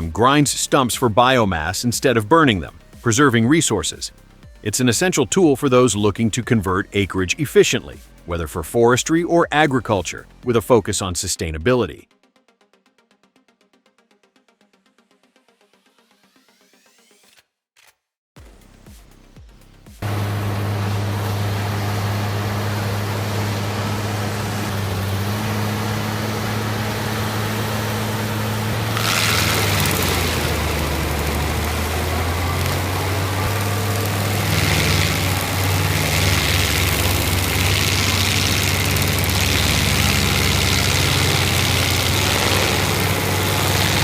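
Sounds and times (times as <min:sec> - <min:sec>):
tractor engine running: 0:00.0 - 0:01.9, 0:20.0 - 0:44.0
mulcher grinding wood: 0:20.0 - 0:44.0.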